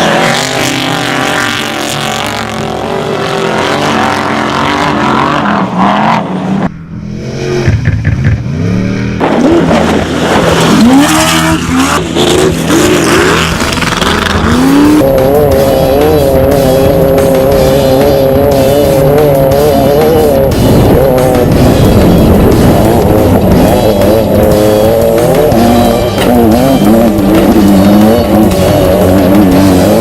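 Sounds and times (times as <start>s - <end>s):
race vehicle engines revving: 0.0s - 30.0s
music-like bed: 10.7s - 30.0s.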